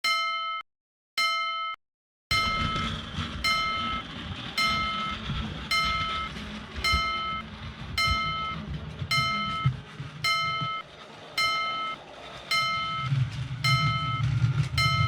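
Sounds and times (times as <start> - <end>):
railroad crossing alarm ringing: 2.3 - 4.0, 5.7 - 7.4, 8.0 - 15.0
train rumble and rail clatter: 2.3 - 15.0.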